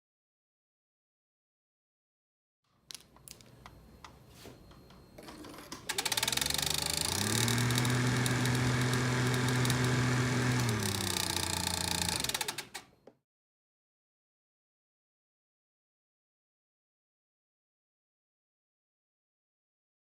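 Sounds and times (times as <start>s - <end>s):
heater blower fan whine: 5.9s - 13.0s
motor hum: 6.0s - 13.1s.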